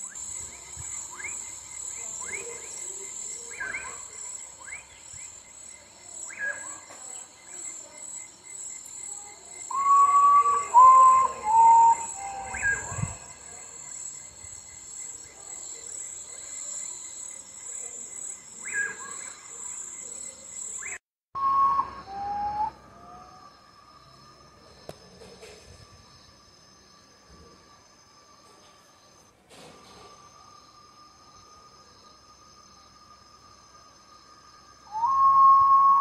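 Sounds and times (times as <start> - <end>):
insect chorus: 0.0 - 36.0
bird whistling mournfully: 9.7 - 13.2, 20.8 - 23.4, 34.9 - 36.0.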